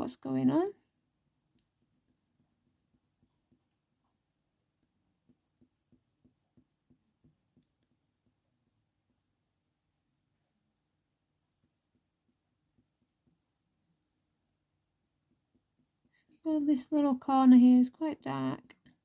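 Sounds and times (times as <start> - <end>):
pencil scratching on paper: 0.7 - 10.2, 10.8 - 14.4, 15.0 - 16.6.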